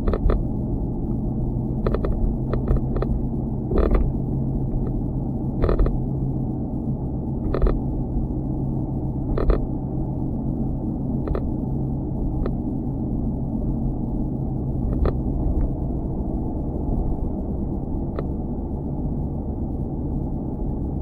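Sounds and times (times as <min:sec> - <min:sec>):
camera mount rattling and buzzing: 0:00.0 - 0:00.4, 0:01.8 - 0:04.1, 0:05.6 - 0:05.9, 0:07.4 - 0:07.8, 0:09.3 - 0:09.6
steady low rumble: 0:00.0 - 0:21.0.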